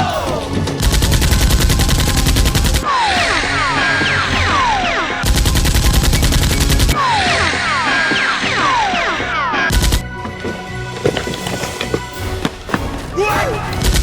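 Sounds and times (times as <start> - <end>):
falling whistling tones: 2.8 - 9.7.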